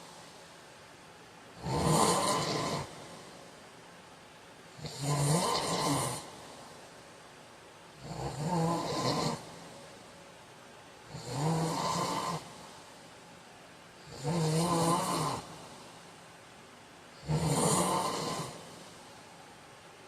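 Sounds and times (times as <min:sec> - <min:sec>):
man snoring: 0:01.6 - 0:03.4, 0:04.8 - 0:06.4, 0:08.0 - 0:09.7, 0:11.1 - 0:12.7, 0:14.0 - 0:15.7, 0:17.2 - 0:19.0.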